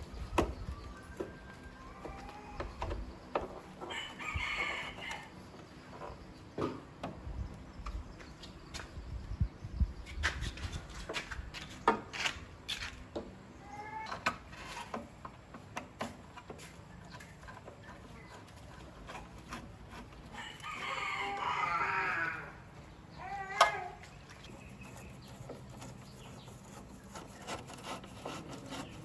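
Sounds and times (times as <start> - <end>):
rooster crowing: 3.9 - 5.3, 20.3 - 22.4.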